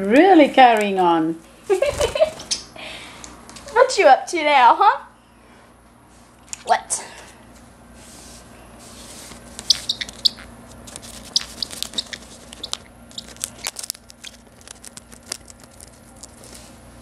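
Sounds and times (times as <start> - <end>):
parrot tearing paper: 9.5 - 16.7
parrot squeaks: 9.6 - 10.5, 11.2 - 13.4.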